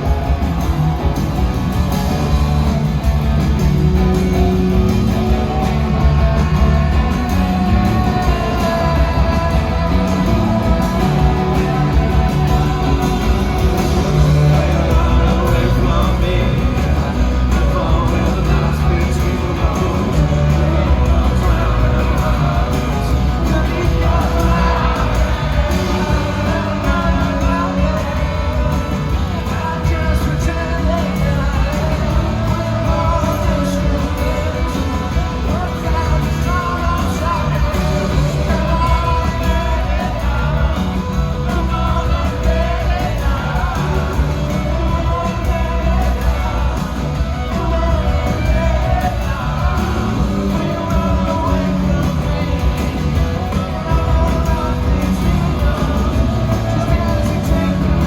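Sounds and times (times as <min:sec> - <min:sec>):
live rock band playing: 0:00.0 - 0:58.0
person singing lead vocal: 0:00.0 - 0:58.0.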